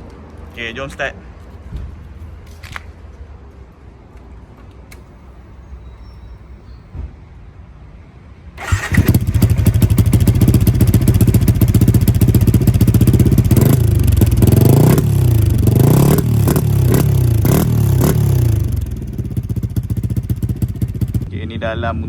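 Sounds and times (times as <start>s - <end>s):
engine revving in throttle blips: 8.6s - 21.3s
motorcycle engine starting and idling: 8.6s - 21.3s.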